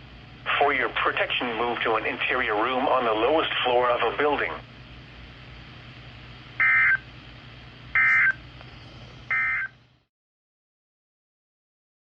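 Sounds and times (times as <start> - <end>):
steady hum and hiss: 0.0 - 10.1
harsh digital data tones: 8.0 - 8.4.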